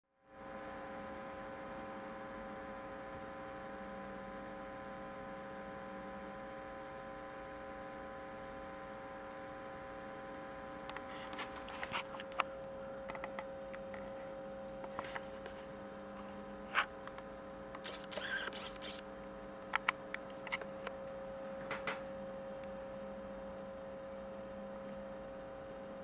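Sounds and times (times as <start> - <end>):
radio humming: 9.8 - 20.9.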